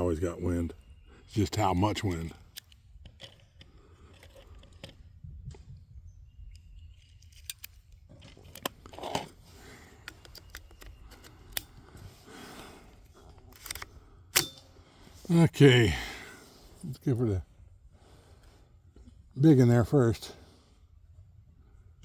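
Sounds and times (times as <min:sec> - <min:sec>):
rustling of gear: 0:01.8 - 0:14.0
clicks from handling a rifle: 0:01.9 - 0:05.7, 0:06.4 - 0:14.7.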